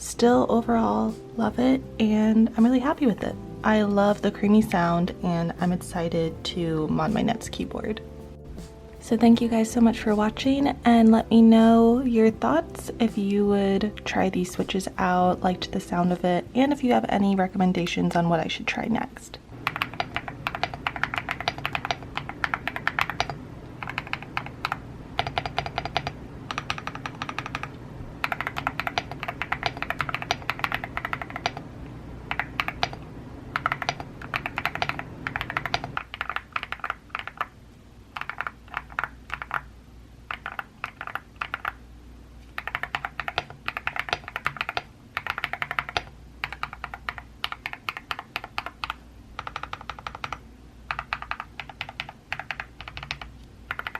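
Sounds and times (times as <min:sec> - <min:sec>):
typing on mechanical keyboard: 0:19.6 - 0:31.6, 0:32.3 - 0:39.7, 0:40.3 - 0:41.8, 0:42.5 - 0:53.9.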